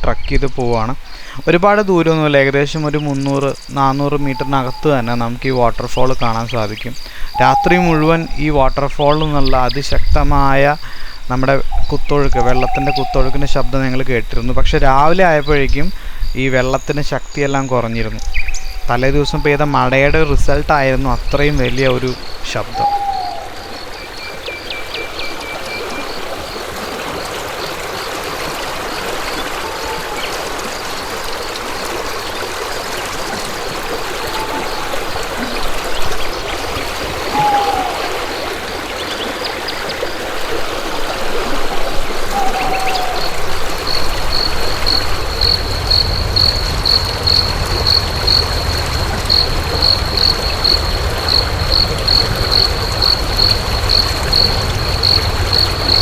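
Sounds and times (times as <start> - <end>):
short falling bird calls: 0.0 - 5.4, 6.1 - 9.6, 20.7 - 46.1
insect pulsed chirp: 0.0 - 56.0
stream water flowing: 0.0 - 56.0.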